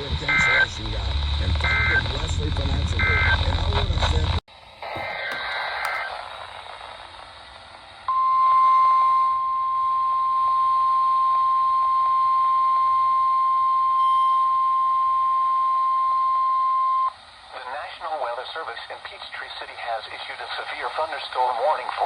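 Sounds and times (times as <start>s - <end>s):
digital header burst: 0.0s - 3.8s
radio hiss: 0.0s - 8.1s, 17.1s - 22.0s.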